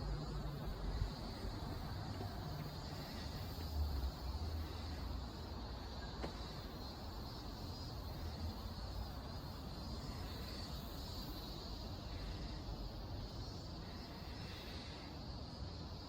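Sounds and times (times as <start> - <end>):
distant traffic rumble: 0.0 - 15.9
even hiss: 0.0 - 16.0.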